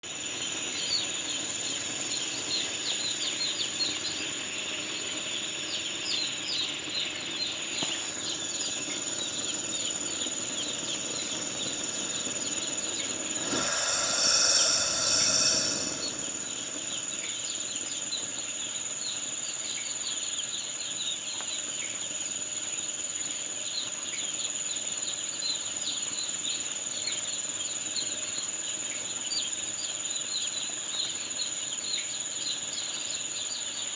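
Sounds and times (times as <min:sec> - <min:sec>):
loud hiss: 0:11.1 - 0:17.4
steady high whine: 0:12.9 - 0:17.3.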